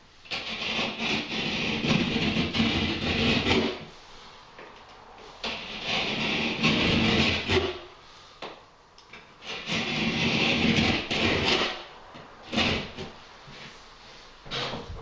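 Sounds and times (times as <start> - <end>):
knife cutting plasterboard: 0.2 - 3.9, 5.4 - 7.9, 9.4 - 13.2.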